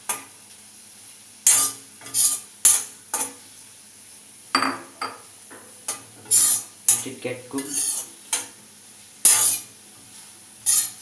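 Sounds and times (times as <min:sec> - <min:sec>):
faint sizzle: 0:00.0 - 0:11.0
spoon scraping and knocking pan: 0:01.5 - 0:03.4, 0:05.9 - 0:08.6, 0:09.2 - 0:09.7, 0:10.6 - 0:11.0.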